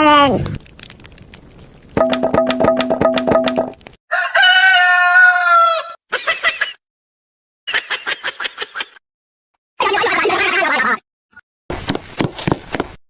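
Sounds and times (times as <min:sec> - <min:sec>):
rooster crowing: 0:04.1 - 0:06.0.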